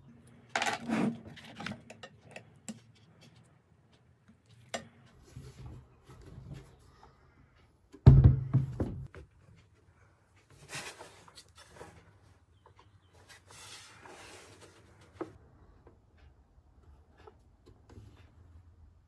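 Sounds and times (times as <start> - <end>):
heavy thump with rumble: 8.1 - 9.1.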